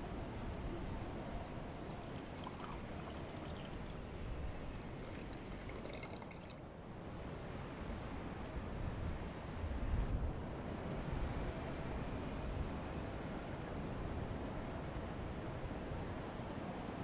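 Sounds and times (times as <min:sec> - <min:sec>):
liquid pouring in thin stream: 0:01.8 - 0:06.6.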